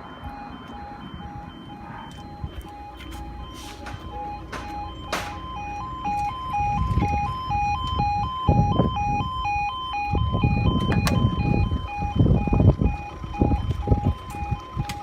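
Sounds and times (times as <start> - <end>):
level crossing two-tone alarm: 0.0 - 15.0.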